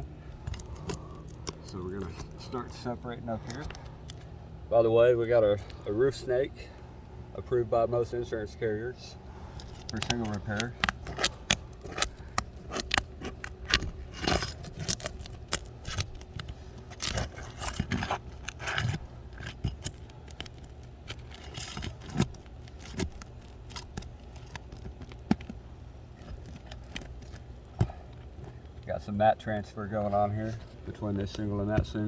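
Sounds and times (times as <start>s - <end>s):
metal tool scraping shingles: 9.6s - 24.8s
shingles clicking and snapping: 9.6s - 28.8s.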